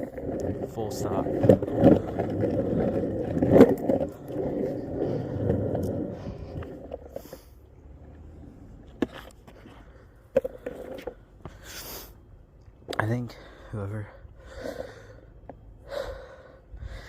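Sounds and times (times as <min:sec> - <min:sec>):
skateboard wheels rolling on pavement: 0:00.0 - 0:11.9.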